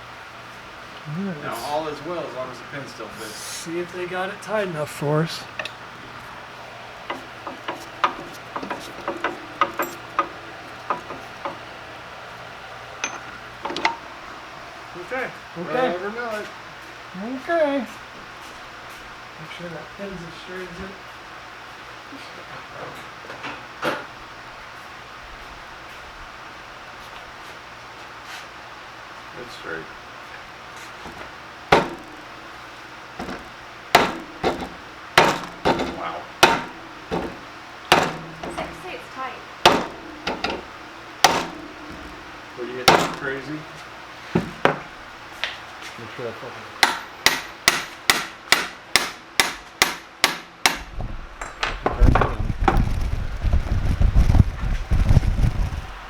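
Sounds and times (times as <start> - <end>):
tools clicking and tapping: 7.1 - 10.3, 13.0 - 14.0, 31.0 - 32.1, 33.2 - 38.8, 39.7 - 42.2
hammer knocking metal pin: 7.1 - 11.6, 31.0 - 32.3, 33.2 - 38.8, 39.6 - 43.4, 46.8 - 50.8.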